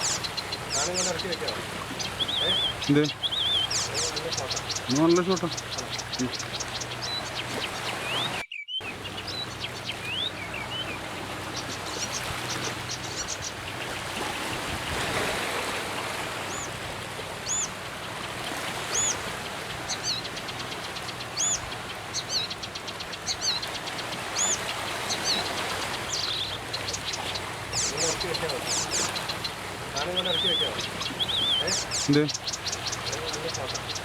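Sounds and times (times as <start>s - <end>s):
steady background hiss: 0.0s - 7.3s, 15.4s - 34.0s
birds chirping and trilling: 0.0s - 34.0s.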